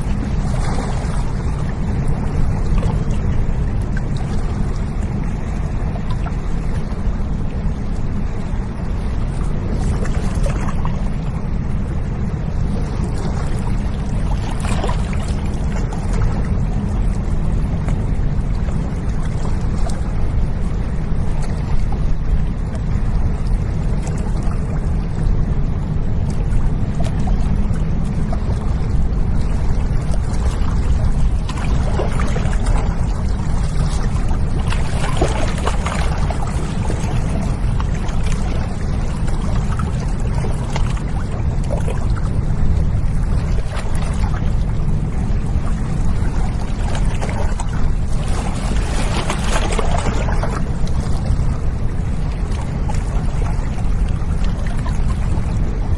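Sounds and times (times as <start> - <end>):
ship engine drone: 0.0 - 55.9.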